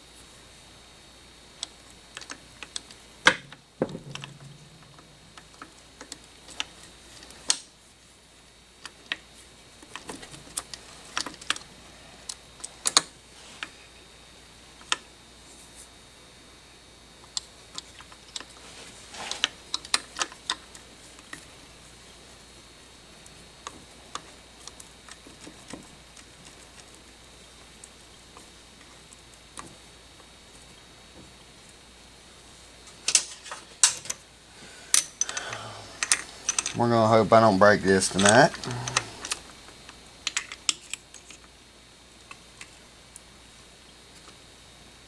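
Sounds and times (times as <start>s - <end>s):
metal tools and parts clicking: 34.9s - 36.8s, 38.1s - 39.4s.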